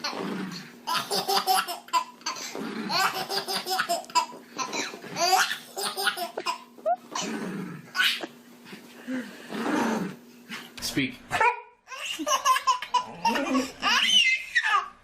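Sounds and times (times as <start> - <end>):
baby laughing: 0.9 - 7.3, 7.9 - 8.4, 11.4 - 15.0.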